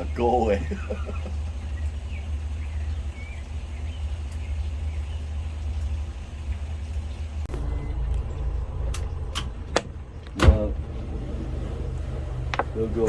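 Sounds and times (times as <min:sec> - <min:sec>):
boat motor running: 0:00.0 - 0:13.0
faint bird chirps: 0:01.0 - 0:08.6.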